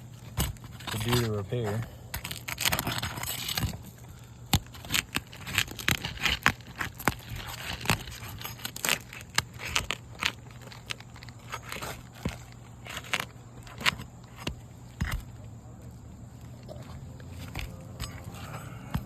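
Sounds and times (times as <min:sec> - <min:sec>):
roof shingle tearing and cracking: 0:00.0 - 0:15.6.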